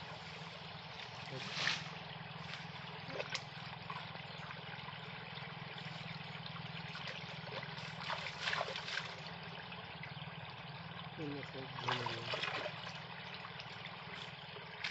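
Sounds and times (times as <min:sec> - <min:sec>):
steady low hum: 0:00.0 - 0:14.9
water running through canal: 0:00.0 - 0:14.9.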